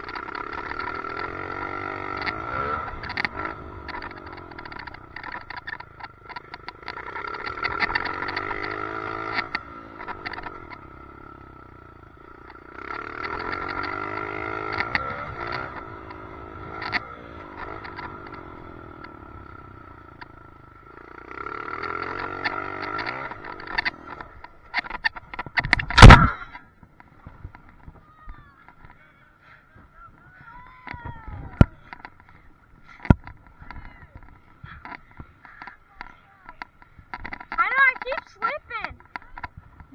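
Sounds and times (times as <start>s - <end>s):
rattling clicks: 0.0s - 10.9s, 21.7s - 28.0s, 33.0s - 39.9s
dirt bike engine revving: 0.0s - 27.8s.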